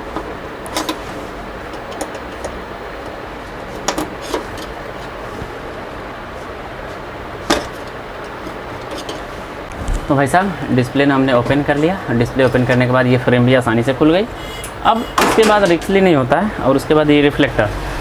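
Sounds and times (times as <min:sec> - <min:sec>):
steady background noise: 0:00.0 - 0:18.0.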